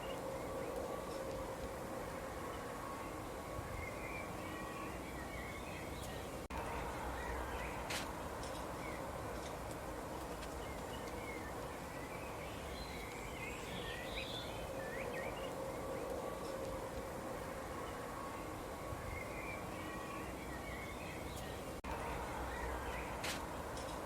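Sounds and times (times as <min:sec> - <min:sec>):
outdoor background hiss: 0:00.0 - 0:24.0
small birds chirping: 0:00.0 - 0:24.0.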